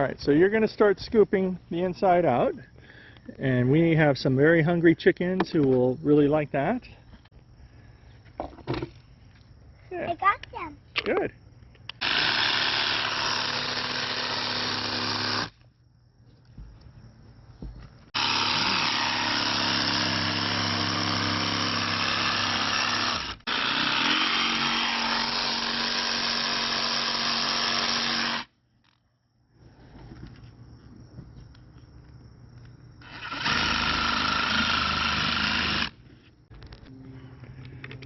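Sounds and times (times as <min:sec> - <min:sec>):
power saw cutting pumpkin: 0:12.0 - 0:15.5, 0:18.2 - 0:28.5, 0:33.0 - 0:36.0.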